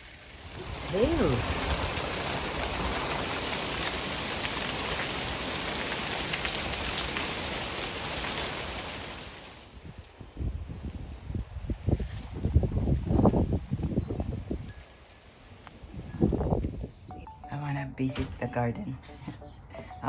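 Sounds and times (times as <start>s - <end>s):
heavy rain hissing: 0.0s - 9.8s
raindrops ticking: 0.5s - 9.5s.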